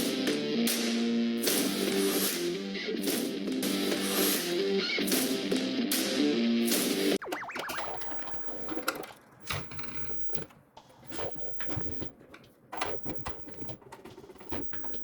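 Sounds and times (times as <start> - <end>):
objects being handled: 8.7 - 15.0.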